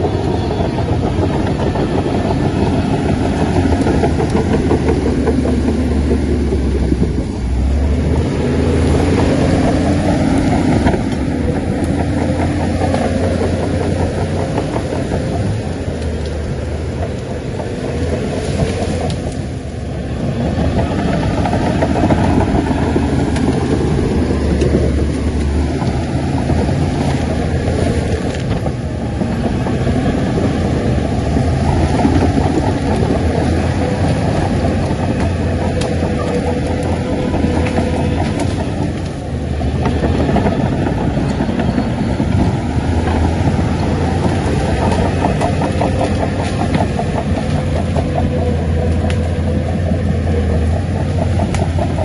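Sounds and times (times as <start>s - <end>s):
heavy diesel engine running: 0.0s - 52.0s.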